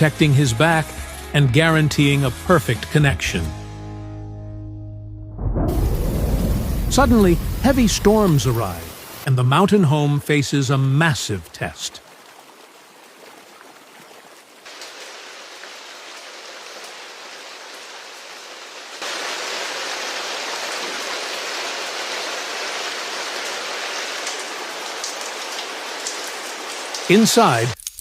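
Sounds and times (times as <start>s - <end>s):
heavy rain falling: 5.7s - 27.8s.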